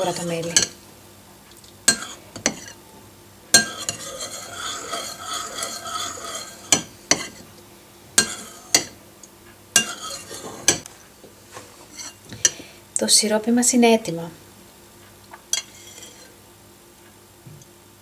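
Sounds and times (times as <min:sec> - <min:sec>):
spoon scraping a saucepan: 0:00.0 - 0:00.7, 0:01.9 - 0:02.8, 0:03.5 - 0:07.5, 0:08.2 - 0:09.0, 0:09.8 - 0:10.8, 0:11.9 - 0:12.6, 0:15.5 - 0:16.4
spoon clinking against a pan: 0:01.9 - 0:02.8, 0:03.5 - 0:07.4, 0:08.2 - 0:09.0, 0:09.8 - 0:10.8.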